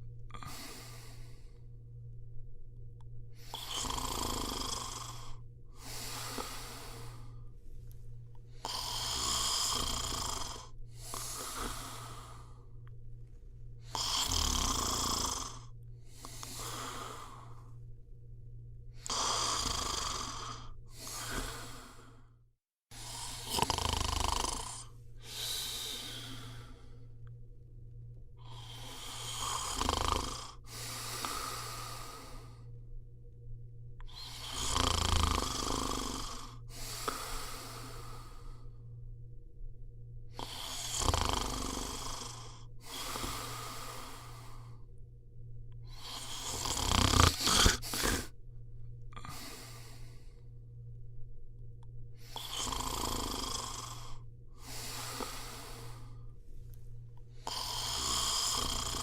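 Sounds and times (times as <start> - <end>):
steady low hum: 0.0 - 59.0
person snoring: 0.3 - 1.6, 3.4 - 7.5, 8.4 - 12.8, 13.8 - 17.8, 18.9 - 22.3, 22.9 - 27.3, 28.4 - 32.8, 34.0 - 38.8, 40.4 - 44.9, 45.8 - 48.4, 49.1 - 50.4, 52.2 - 56.3, 57.3 - 59.0.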